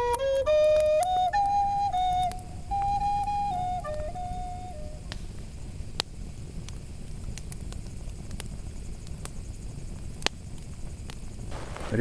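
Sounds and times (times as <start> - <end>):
campfire crackling and popping: 0.0 - 12.0
low outdoor rumble: 1.0 - 12.0.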